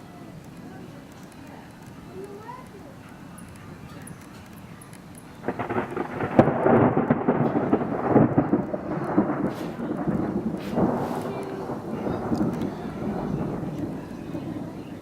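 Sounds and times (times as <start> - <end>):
thunder crack and rumble: 5.4 - 15.0.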